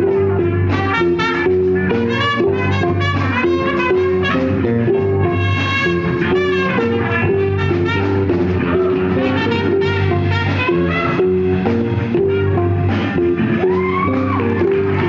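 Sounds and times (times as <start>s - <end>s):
live funk jazz band: 0.0s - 15.0s.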